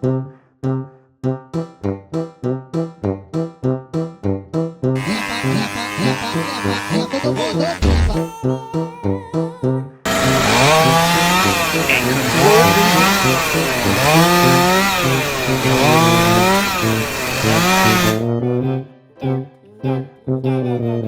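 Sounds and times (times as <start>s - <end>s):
power tool hissing: 5.0s - 8.2s, 10.1s - 18.2s.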